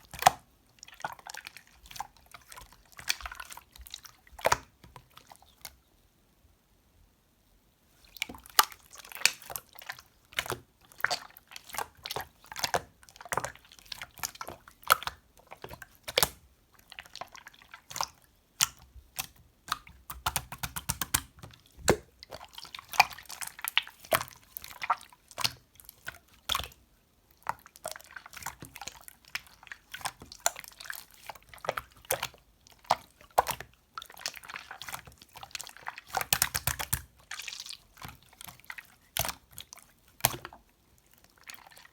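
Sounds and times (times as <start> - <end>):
slime sticky wet clicks: 17.8 - 26.8, 36.0 - 40.5.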